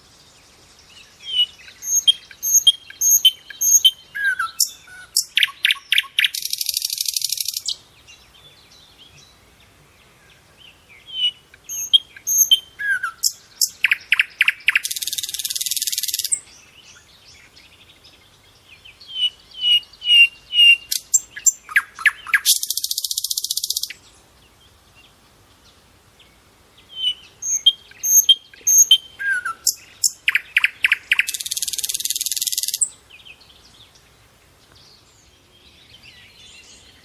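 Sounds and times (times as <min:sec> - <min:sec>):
songbirds chirping and singing: 0:00.0 - 0:37.0
buzzy bird trill: 0:01.7 - 0:07.7, 0:11.7 - 0:16.4, 0:19.7 - 0:24.0, 0:27.0 - 0:32.9.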